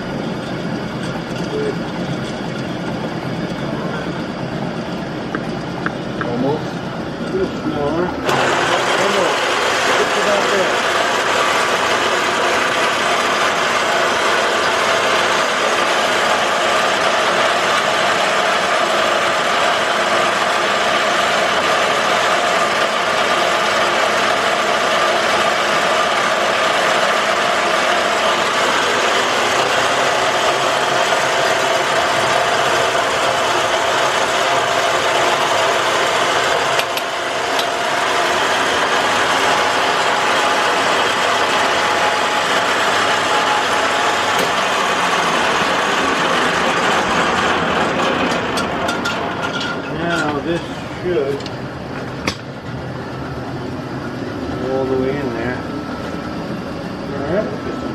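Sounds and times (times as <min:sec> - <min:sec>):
machine tool humming: 0:00.0 - 0:57.9.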